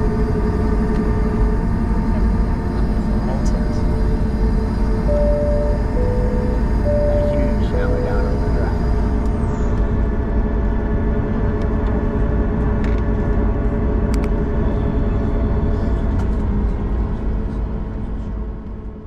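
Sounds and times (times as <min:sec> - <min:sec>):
faint steady hum: 0:00.0 - 0:10.4
airplane engines idling rumble: 0:00.0 - 0:19.0.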